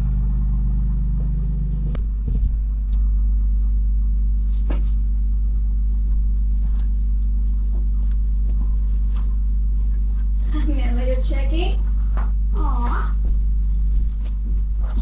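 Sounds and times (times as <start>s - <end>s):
car engine rumbling: 0.0s - 4.3s.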